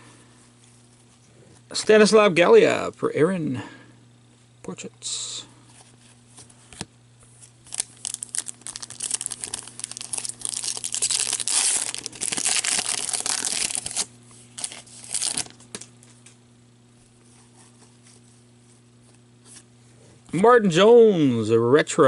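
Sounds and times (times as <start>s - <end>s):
foil wrapper tearing and crinkling: 7.6s - 15.9s.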